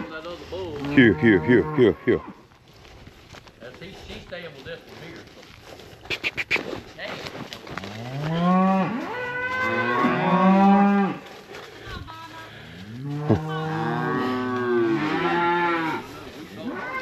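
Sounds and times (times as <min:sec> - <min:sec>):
cow mooing: 0:00.8 - 0:02.3, 0:08.0 - 0:11.2, 0:13.0 - 0:17.0.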